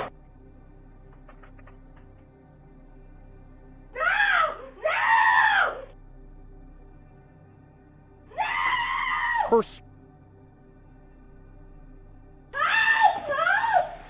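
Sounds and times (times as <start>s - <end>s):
woman screaming: 4.0s - 5.9s, 8.3s - 9.8s, 12.6s - 14.0s.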